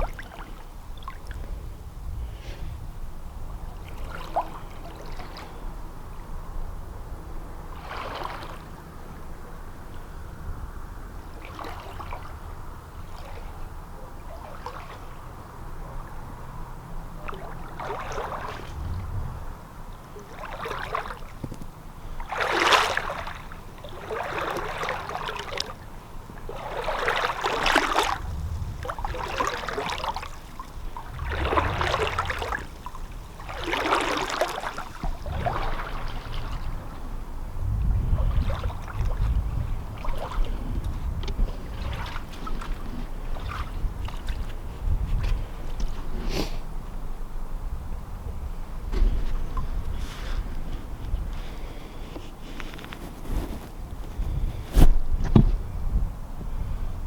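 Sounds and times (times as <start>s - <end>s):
wind rumble on microphone: 0.0s - 57.0s
footsteps rustling: 48.9s - 55.6s.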